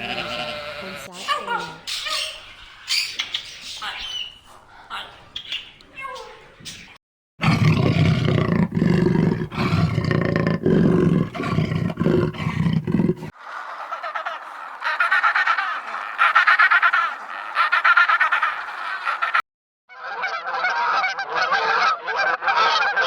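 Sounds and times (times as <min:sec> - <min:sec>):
tiger roaring and growling: 0:07.4 - 0:13.4
fowl calls: 0:13.4 - 0:23.0.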